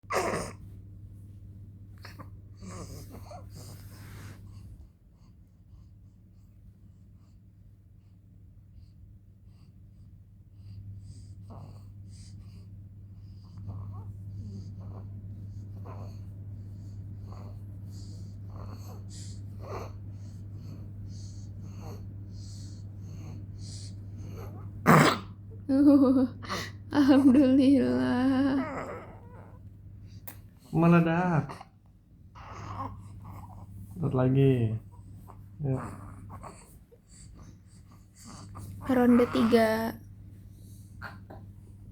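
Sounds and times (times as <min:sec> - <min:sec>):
steady low hum: 0:00.0 - 0:41.9
person sniffing and breathing: 0:02.8 - 0:04.8.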